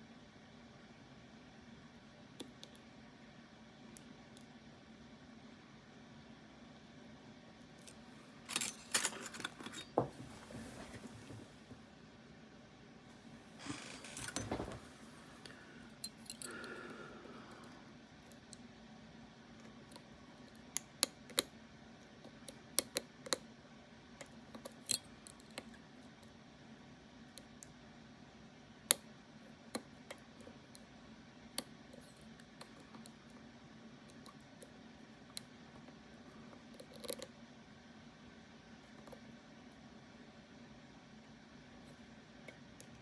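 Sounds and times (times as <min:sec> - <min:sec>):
faint steady hum: 0:00.0 - 0:43.0
metallic clicks and clinks: 0:08.5 - 0:10.0, 0:16.0 - 0:16.6.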